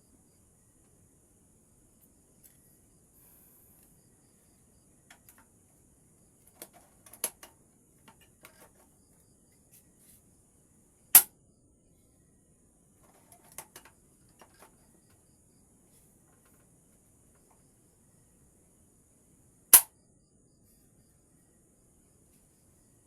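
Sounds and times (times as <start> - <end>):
shotgun metallic clicks and knocks: 6.5 - 8.9
sharp crack: 11.1 - 11.4, 19.7 - 19.9.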